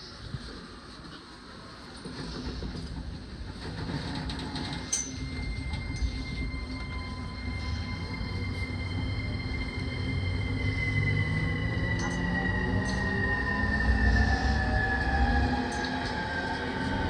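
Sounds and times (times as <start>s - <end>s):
train traction motor rumble: 0.4s - 17.0s
thin steady whine: 4.2s - 17.0s.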